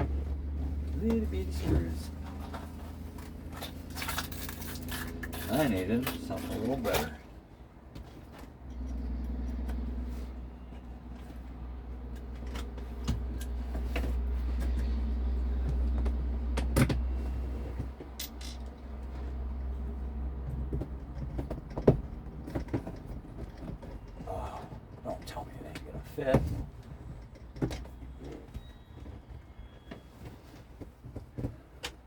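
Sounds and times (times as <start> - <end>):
sharp clicks and knocks: 20.4 - 28.4.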